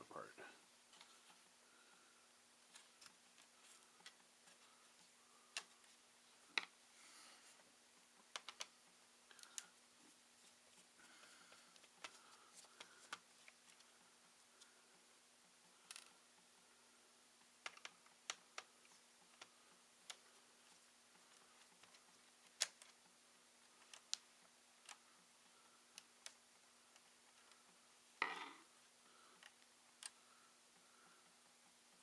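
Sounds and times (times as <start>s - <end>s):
laptop parts clicking: 8.3s - 9.7s, 17.6s - 20.5s, 21.2s - 23.0s.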